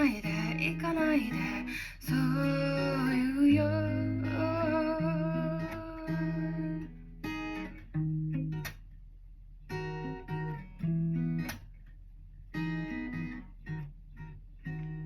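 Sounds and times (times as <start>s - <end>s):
acoustic guitar strummed chords: 0.0s - 8.9s.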